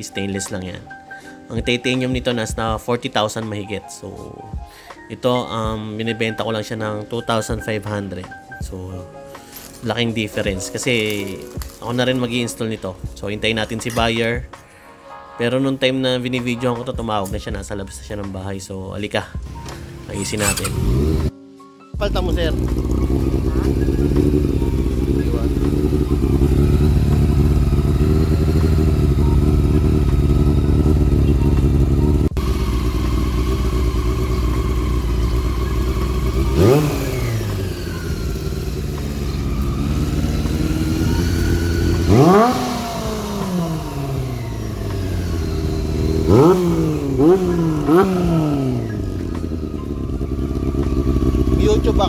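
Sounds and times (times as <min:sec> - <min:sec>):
motorcycle engine idling and revving: 0:09.7 - 0:12.4, 0:19.4 - 0:21.3, 0:22.0 - 0:52.0.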